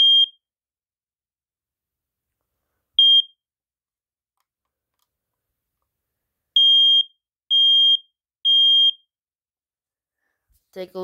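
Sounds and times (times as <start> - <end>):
smoke alarm beeping: 0.0 - 0.5, 3.0 - 3.5, 6.6 - 9.2.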